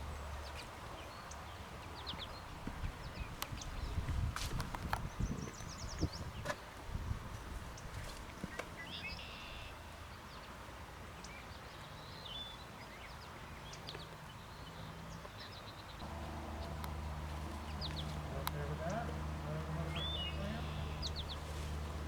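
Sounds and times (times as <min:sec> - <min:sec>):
small birds chirping: 0:04.9 - 0:06.5, 0:07.8 - 0:09.9, 0:12.1 - 0:22.0
beaver gnawing wood: 0:16.0 - 0:22.0
low steady hum: 0:16.0 - 0:22.0.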